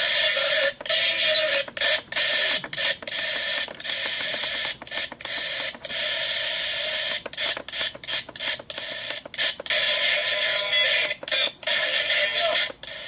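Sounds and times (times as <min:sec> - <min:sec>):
radio static hiss: 0:00.0 - 0:13.0
radio tuning clicks: 0:00.0 - 0:13.0.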